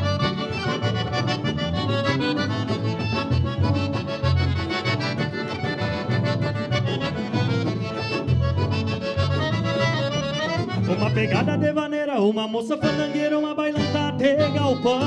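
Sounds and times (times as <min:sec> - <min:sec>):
bouncing bass line: 0:00.0 - 0:12.0, 0:12.8 - 0:15.0
band playing accordion music: 0:00.0 - 0:15.0.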